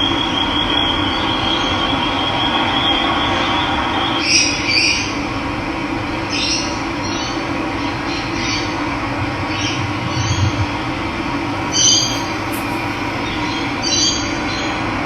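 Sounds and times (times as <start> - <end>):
water rushing: 11.6 - 13.8
birds calling: 11.6 - 14.0
thin high whistle: 11.6 - 14.0.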